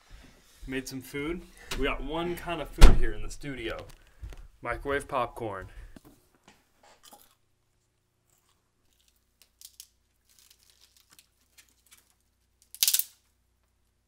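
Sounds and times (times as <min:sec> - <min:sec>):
bag tearing rip: 0:12.8 - 0:13.1.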